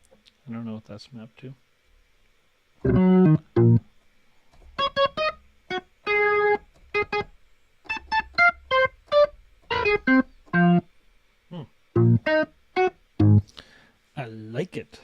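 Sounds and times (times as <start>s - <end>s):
keyboard instrument notes: 2.8s - 3.8s, 6.0s - 7.2s, 7.9s - 10.8s, 12.0s - 13.6s.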